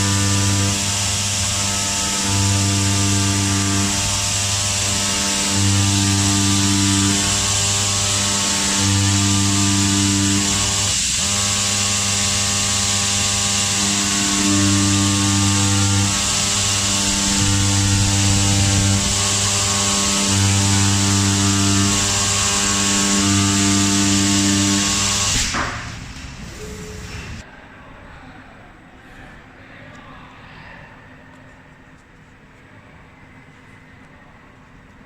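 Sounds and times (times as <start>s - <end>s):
oscillating knife cutter buzzing: 0.0s - 25.6s
low machine hum: 0.0s - 27.4s.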